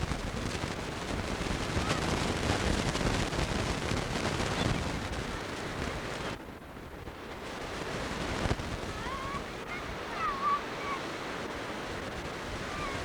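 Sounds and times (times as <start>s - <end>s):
surf: 0.0s - 13.0s
wind: 0.0s - 13.0s.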